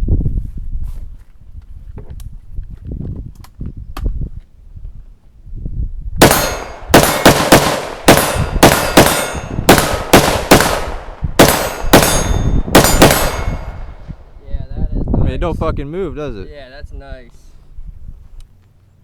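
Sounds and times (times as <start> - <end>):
rifle shots with ringing tail: 6.2 - 14.2.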